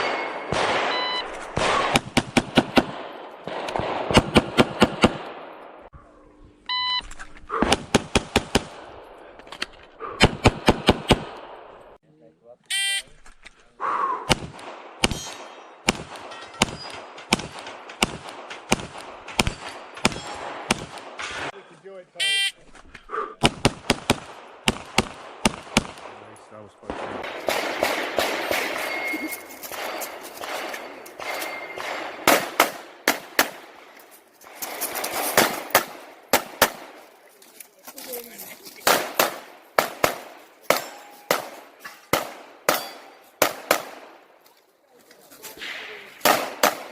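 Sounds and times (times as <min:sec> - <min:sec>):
pistol shots: 0:00.0 - 0:05.7, 0:10.2 - 0:11.8, 0:14.3 - 0:21.5, 0:23.4 - 0:33.8, 0:34.9 - 0:37.1, 0:38.8 - 0:44.3, 0:45.6 - 0:46.9.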